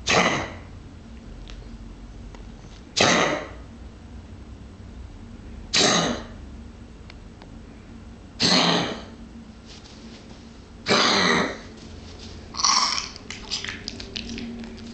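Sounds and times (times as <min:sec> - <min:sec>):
pet coughing: 0:00.0 - 0:00.6, 0:03.0 - 0:03.6, 0:05.7 - 0:06.4, 0:08.4 - 0:09.1, 0:10.8 - 0:11.6.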